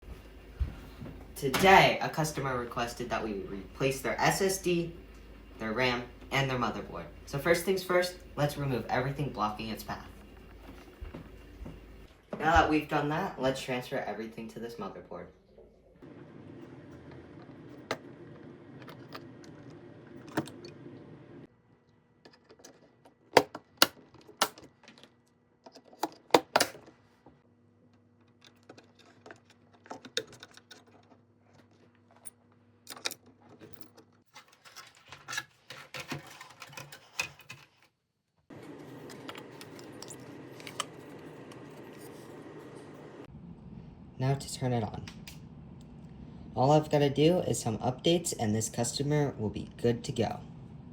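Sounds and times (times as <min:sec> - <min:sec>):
steady hum: 0:00.0 - 0:21.5, 0:38.5 - 0:50.9
computer parts clicking and clinking: 0:28.3 - 0:31.2, 0:32.9 - 0:37.9.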